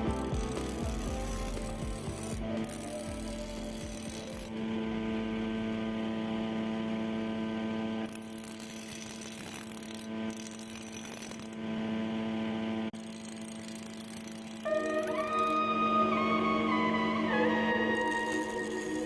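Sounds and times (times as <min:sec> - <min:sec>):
sustained tones music over drone: 0:00.0 - 0:08.1, 0:14.6 - 0:19.0.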